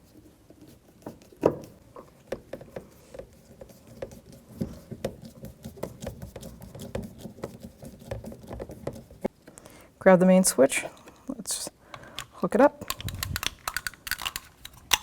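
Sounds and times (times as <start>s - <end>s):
hand tool clicking: 11.9s - 15.0s.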